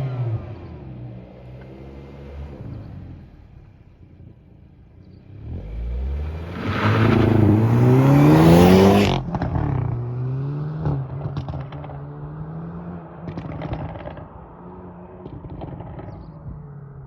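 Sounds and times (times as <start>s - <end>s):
car engine on overrun: 5.1s - 10.4s
exhaust crackles and pops: 11.0s - 12.0s, 13.2s - 14.4s, 15.2s - 16.7s.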